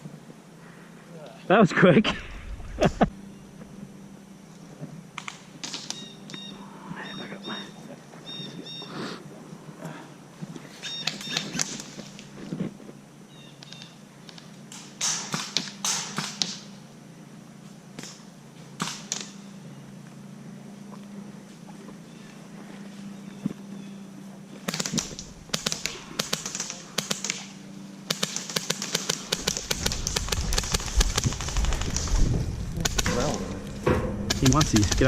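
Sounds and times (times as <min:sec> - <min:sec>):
airsoft guns clicking: 0:05.2 - 0:06.5, 0:10.9 - 0:12.3, 0:13.6 - 0:16.7, 0:24.6 - 0:33.4
bird chirping: 0:05.9 - 0:09.0, 0:10.8 - 0:11.7.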